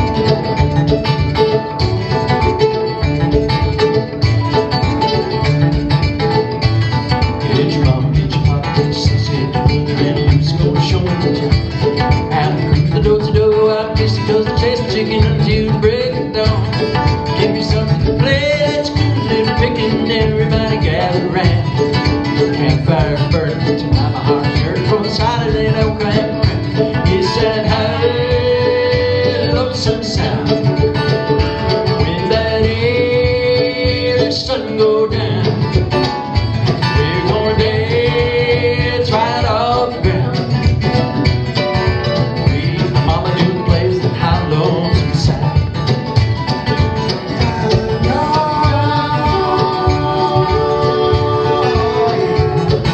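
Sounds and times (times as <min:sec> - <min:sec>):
acoustic string band playing: 0:00.0 - 0:52.9.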